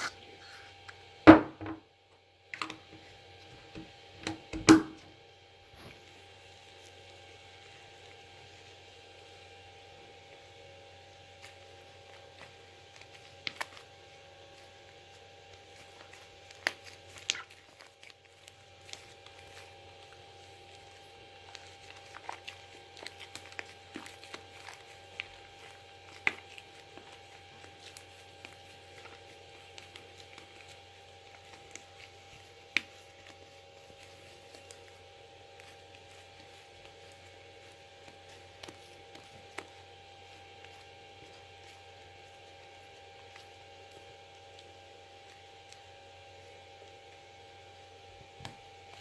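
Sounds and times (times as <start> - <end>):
slime squishing: 0.0 - 1.0, 11.2 - 49.0.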